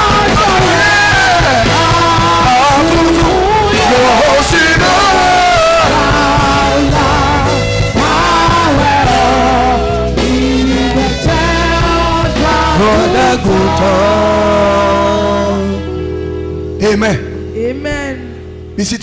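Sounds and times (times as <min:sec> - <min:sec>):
voices singing: 0:00.0 - 0:16.2
band with steady bass: 0:00.0 - 0:19.0.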